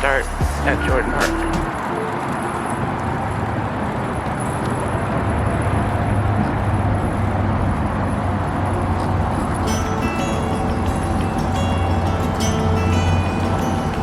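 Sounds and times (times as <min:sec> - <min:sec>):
highway traffic rush: 0:00.0 - 0:14.0.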